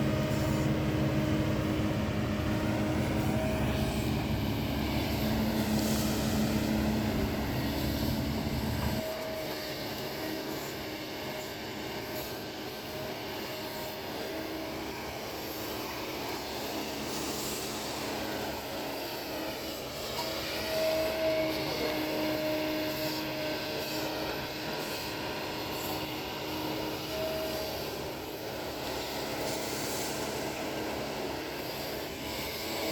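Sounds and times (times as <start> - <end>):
excavator diesel engine running: 0.0 - 12.0.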